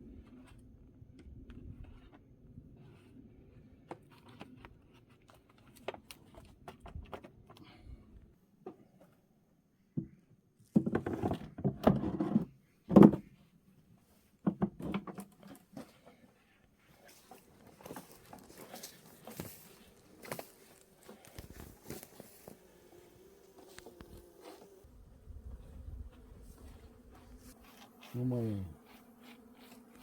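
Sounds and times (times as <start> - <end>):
honey bees buzzing: 17.4 - 30.0.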